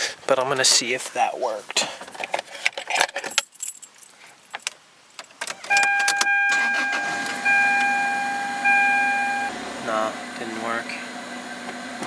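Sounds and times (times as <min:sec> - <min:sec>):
loud high-pitched tone: 0:05.7 - 0:10.1
car engine running: 0:06.5 - 0:12.0.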